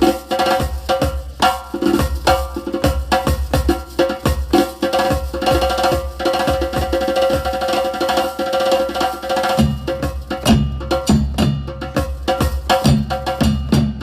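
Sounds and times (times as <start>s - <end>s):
electronic hand-drum rhythm: 0.0s - 14.0s
deeper drum hits: 9.6s - 14.0s.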